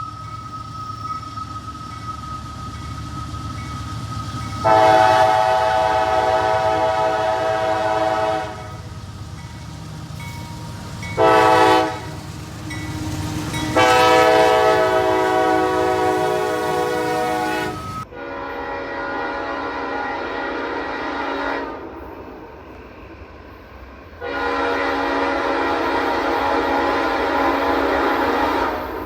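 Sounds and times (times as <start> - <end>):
moving train rumble: 0.0 - 29.0
locomotive air horn: 4.6 - 8.9, 11.2 - 21.8, 24.2 - 29.0.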